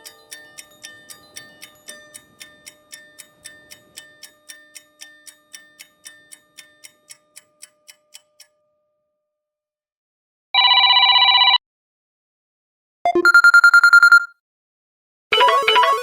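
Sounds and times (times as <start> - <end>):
ringtone ticking: 0.0 - 8.6, 13.1 - 14.3, 15.3 - 16.0.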